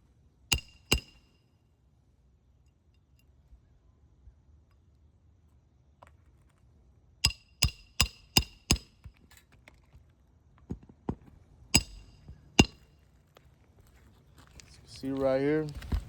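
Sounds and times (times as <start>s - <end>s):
hammer striking metal bar: 0.5s - 1.4s, 7.2s - 9.0s, 11.8s - 12.9s.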